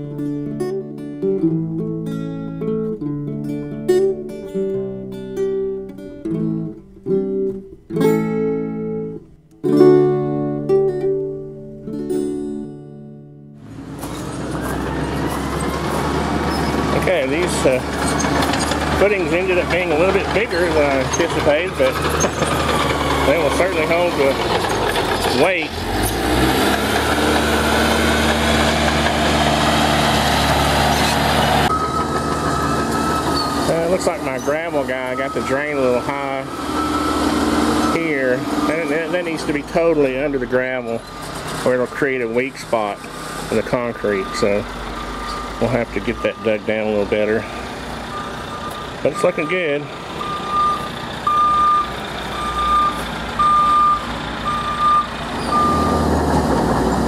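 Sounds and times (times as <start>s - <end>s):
engine running with hiss: 13.7s - 40.4s, 41.0s - 46.3s, 54.0s - 57.0s
vehicle backup alarm beeping: 14.1s - 25.6s, 30.1s - 40.4s, 42.9s - 56.1s
thin high tone: 30.9s - 40.1s.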